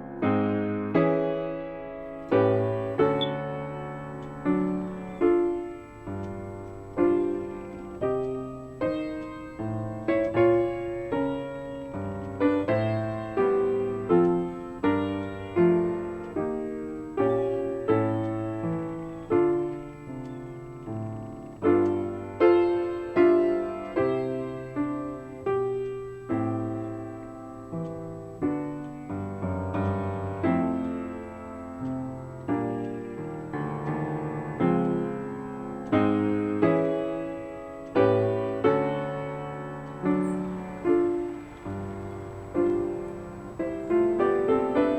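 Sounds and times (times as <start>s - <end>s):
slow solo piano melody: 0.0s - 44.9s.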